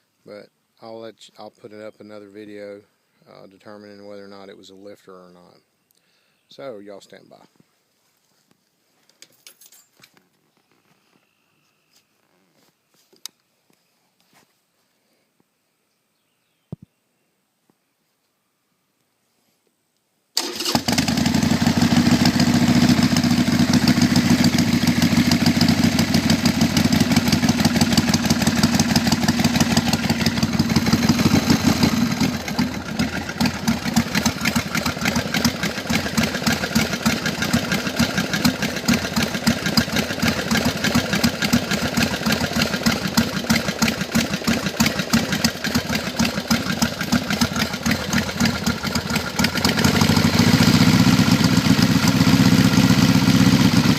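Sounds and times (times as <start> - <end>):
motorcycle engine running: 20.5 - 53.9.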